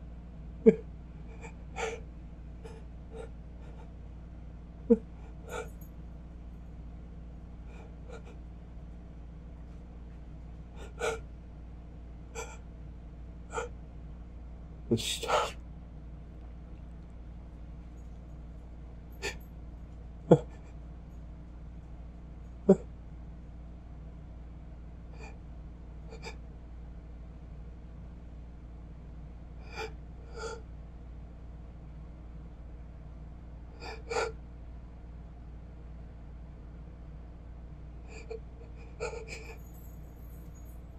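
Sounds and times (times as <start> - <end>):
person gasping in-breaths: 5.5 - 5.7.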